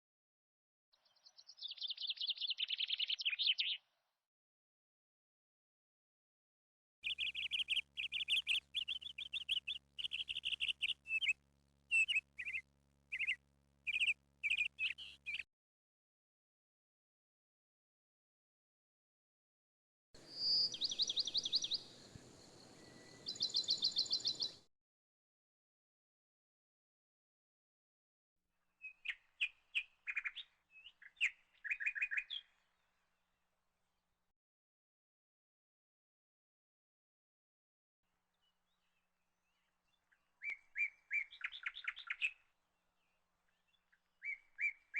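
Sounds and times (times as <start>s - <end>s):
small bird chirping: 1.0s - 3.9s, 7.0s - 15.5s, 20.2s - 24.7s, 28.8s - 32.7s, 38.4s - 44.9s
faint low hum: 20.2s - 24.6s.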